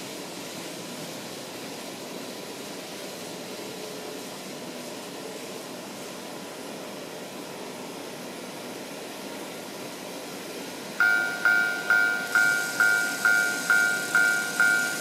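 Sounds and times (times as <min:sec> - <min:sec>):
model train whirring on track: 0:00.0 - 0:15.0
level crossing bell dinging: 0:11.0 - 0:15.0.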